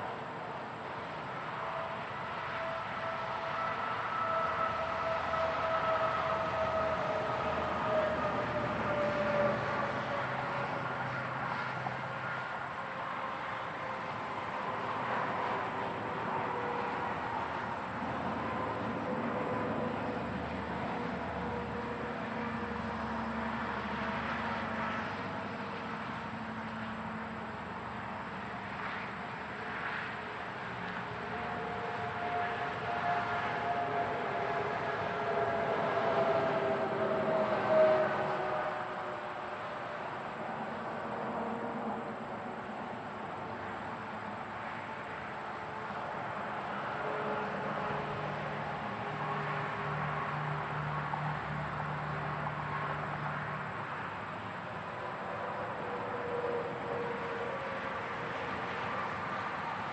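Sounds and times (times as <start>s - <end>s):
highway traffic: 0.0s - 59.9s.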